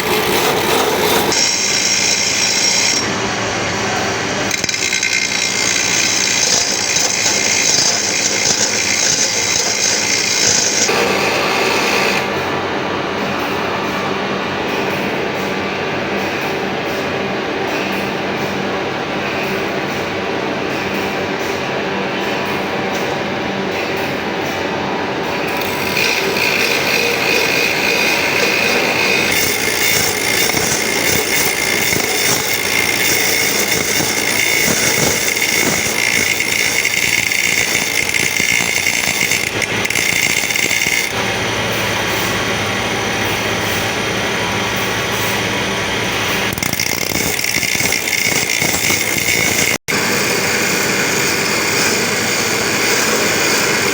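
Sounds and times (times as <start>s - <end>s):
metal grinding saw teeth: 0.0s - 3.1s, 4.5s - 12.3s, 25.5s - 53.9s.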